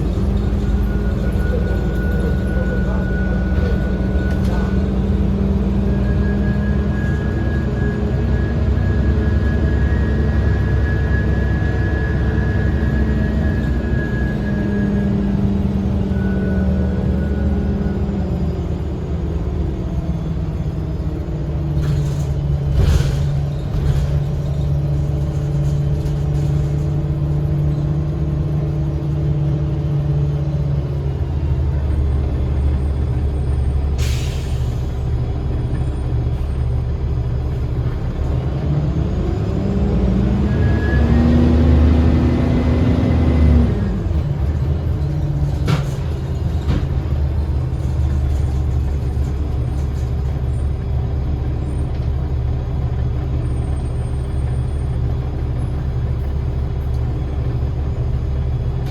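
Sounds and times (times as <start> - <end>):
bus diesel engine running: 0.0 - 58.9
air brake hisses: 34.0 - 35.0.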